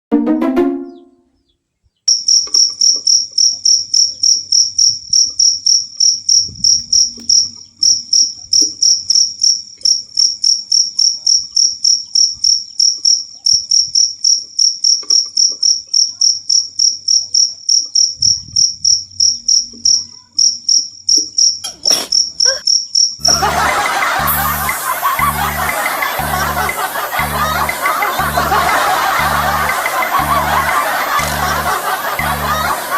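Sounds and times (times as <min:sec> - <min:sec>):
cricket chirping: 0:02.1 - 0:32.9
loud noisy sound: 0:23.2 - 0:32.9.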